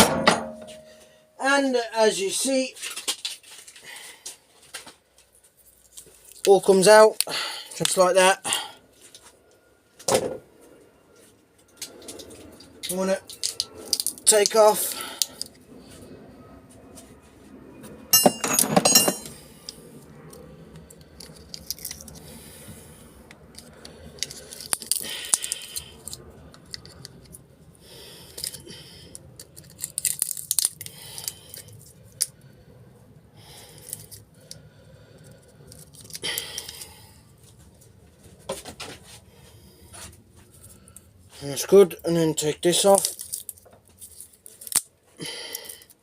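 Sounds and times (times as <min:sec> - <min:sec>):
metal parts rattling and clinking: 0:18.2 - 0:19.4, 0:42.7 - 0:44.8.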